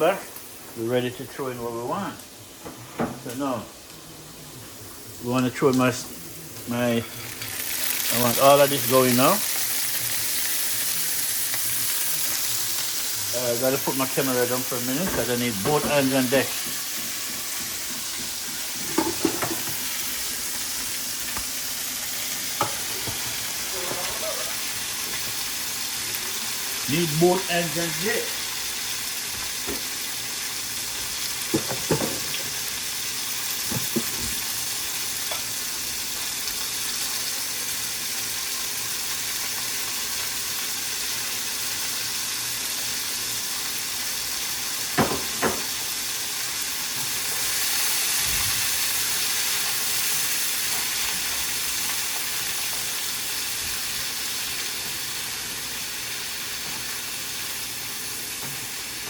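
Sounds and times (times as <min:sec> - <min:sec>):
vegetables sizzling in oil: 0:00.0 - 0:59.0
utensil clacking against pan: 0:15.0 - 0:19.8.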